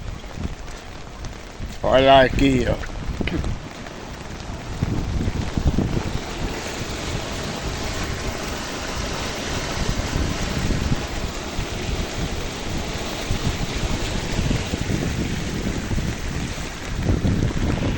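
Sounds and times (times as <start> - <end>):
rainwater runoff rushing: 0.0 - 17.9
wind buffeting microphone: 0.0 - 17.9.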